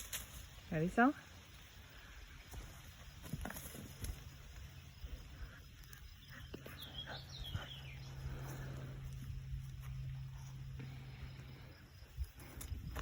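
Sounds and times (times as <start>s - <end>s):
steady low hum: 0.0s - 13.0s
bird chirping: 4.6s - 9.1s.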